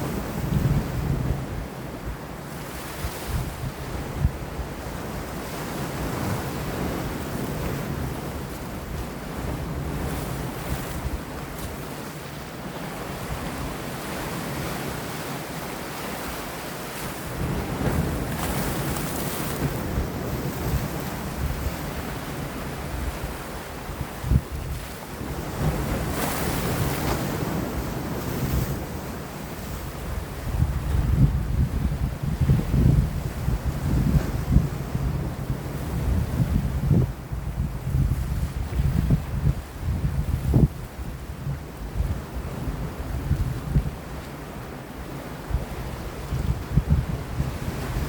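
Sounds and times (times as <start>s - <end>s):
wind buffeting microphone: 0.0s - 15.2s, 17.0s - 44.3s, 45.4s - 48.0s
waves breaking against rocks: 2.5s - 36.7s.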